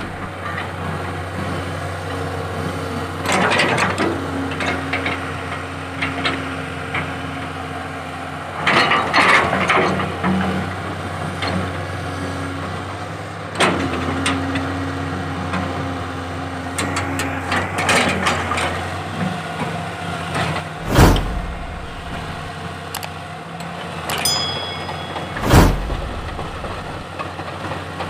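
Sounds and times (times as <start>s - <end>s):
heavy thud: 20.8s - 22.5s, 25.3s - 27.0s.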